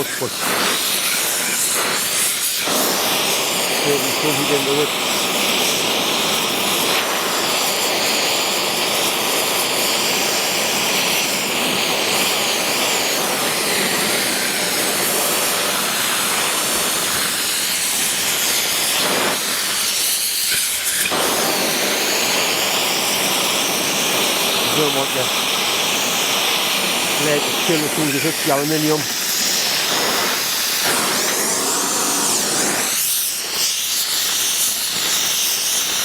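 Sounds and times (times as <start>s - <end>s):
gas torch flame hissing: 0.0s - 36.0s.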